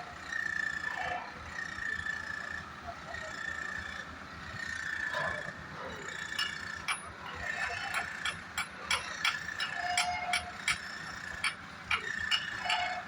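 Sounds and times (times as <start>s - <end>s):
metallic clicks and clanks: 6.3s - 13.0s.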